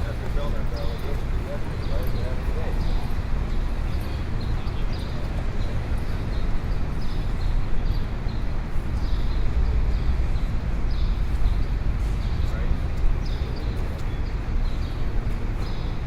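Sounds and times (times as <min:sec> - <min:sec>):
traffic rumble: 0:00.0 - 0:16.0.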